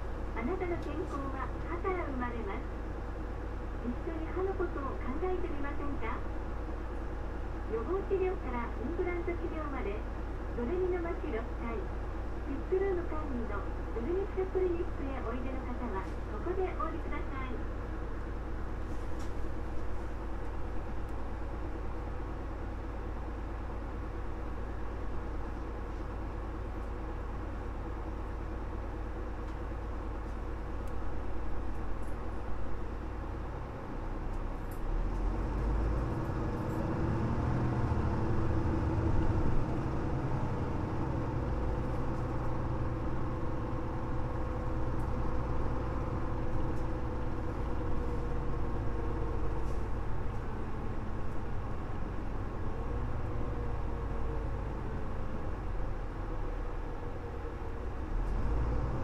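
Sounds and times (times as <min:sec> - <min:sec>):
bus engine rumble: 0:00.0 - 0:59.0.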